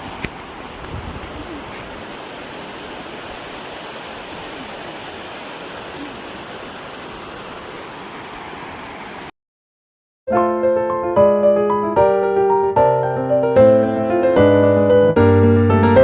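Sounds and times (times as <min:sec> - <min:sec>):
stream water rushing: 0:00.0 - 0:09.3.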